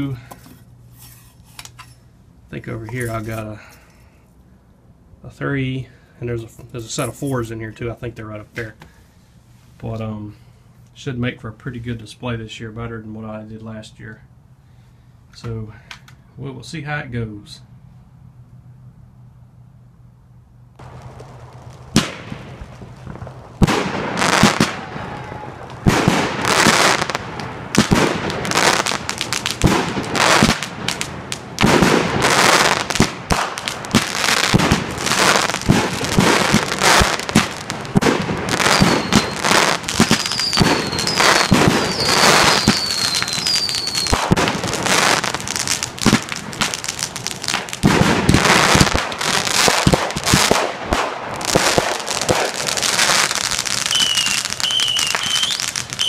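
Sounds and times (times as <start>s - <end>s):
fireworks bangs and crackling: 20.8s - 56.0s
falling firework whistles: 31.6s - 46.3s, 51.7s - 56.0s.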